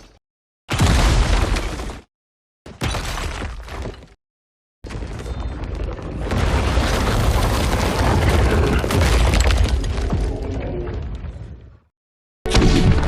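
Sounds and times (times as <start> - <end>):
crackling debris impacts: 4.9 - 11.5
rumbling crash of collapsing rock: 4.9 - 11.5.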